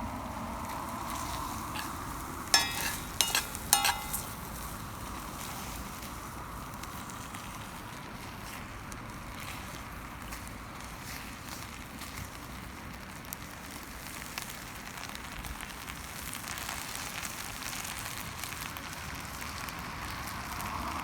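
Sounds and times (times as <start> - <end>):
chicken sizzling: 0.0 - 20.8
metal utensil clinking: 1.4 - 2.0, 2.6 - 4.5.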